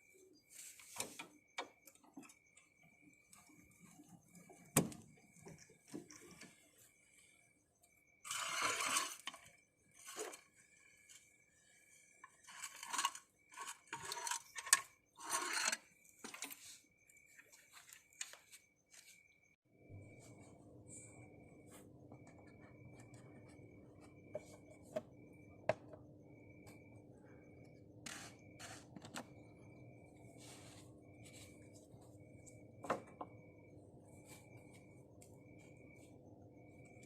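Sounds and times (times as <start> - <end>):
scraping or rustling: 8.3 - 10.6, 12.3 - 16.8.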